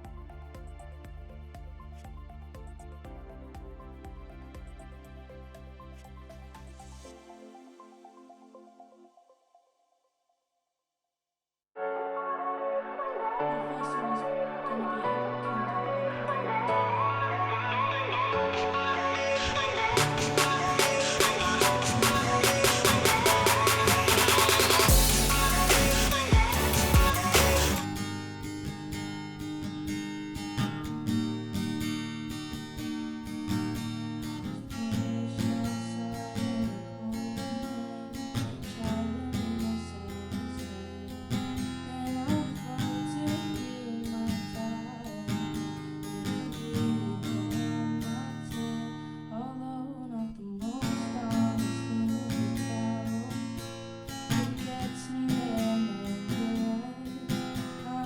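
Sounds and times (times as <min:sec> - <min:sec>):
acoustic guitar strumming: 0:17.8 - 0:49.4.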